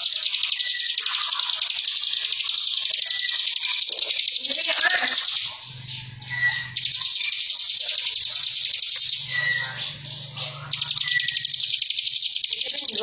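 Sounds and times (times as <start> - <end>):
soft bird chirps: 0.0 - 13.0
songbird rattling trill: 0.0 - 13.0.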